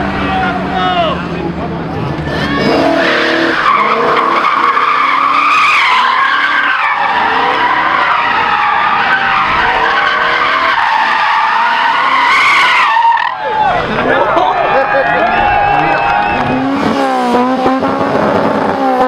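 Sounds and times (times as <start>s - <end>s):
car engine revving: 0.0s - 19.0s
tyres squealing on tarmac: 2.3s - 16.7s.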